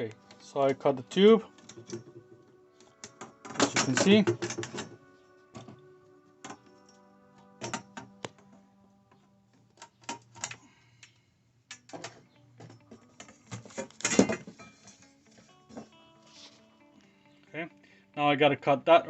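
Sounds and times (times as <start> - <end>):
soft background music: 0.0 - 19.0
metal pipe and cutter clinks: 3.0 - 5.0, 12.7 - 15.1.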